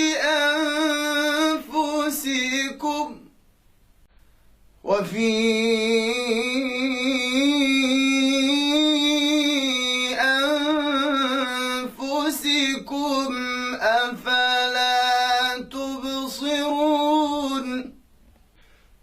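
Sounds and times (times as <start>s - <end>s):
man chanting melodically: 0.0s - 3.3s, 4.8s - 18.0s.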